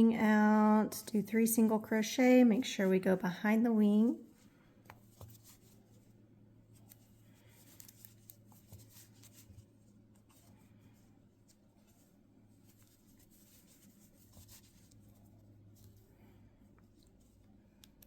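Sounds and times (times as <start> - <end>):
crochet hook and yarn rustling: 3.8 - 18.0.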